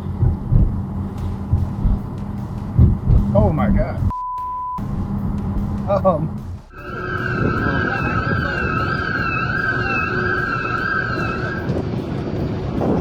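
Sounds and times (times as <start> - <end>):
heavy rushing noise: 0.0 - 4.1, 4.8 - 13.0
siren wailing: 6.7 - 12.0
steady high tone: 6.7 - 12.2.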